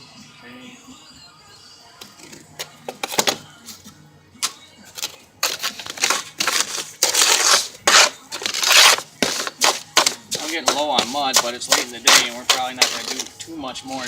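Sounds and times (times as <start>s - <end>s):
trowel and stones scraping mortar: 4.9s - 14.0s.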